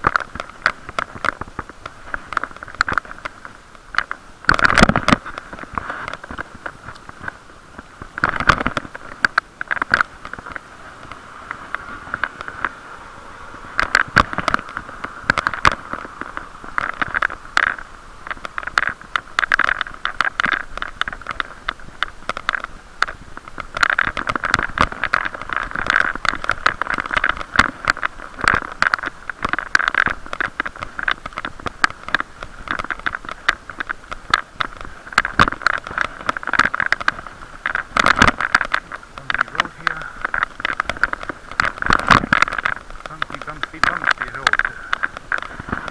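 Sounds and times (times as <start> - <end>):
muffled bicycle rushing noise: 0.0 - 45.9
sharp knocks and rattles: 13.5 - 45.9.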